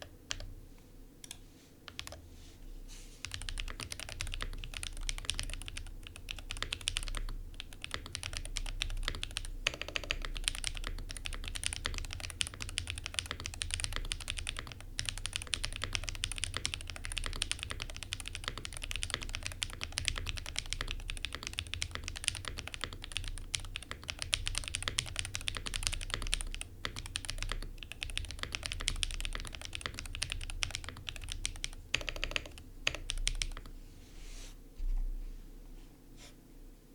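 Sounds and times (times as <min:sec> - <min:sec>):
fast mechanical keyboard typing: 0:01.2 - 0:02.2, 0:03.2 - 0:33.7.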